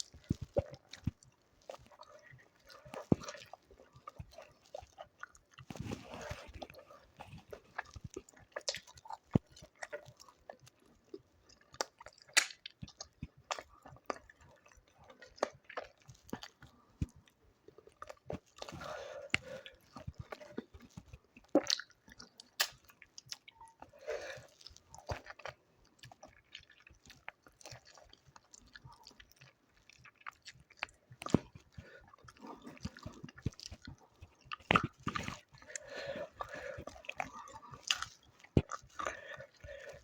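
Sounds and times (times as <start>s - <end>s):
person chewing and smacking food: 0.0s - 40.0s
food crunches: 11.6s - 14.6s.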